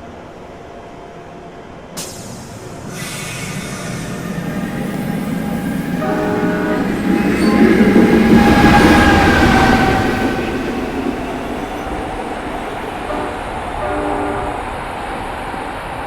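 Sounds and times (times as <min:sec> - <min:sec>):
train approaching: 0:00.0 - 0:16.0
train horn: 0:06.0 - 0:10.5, 0:13.0 - 0:14.7.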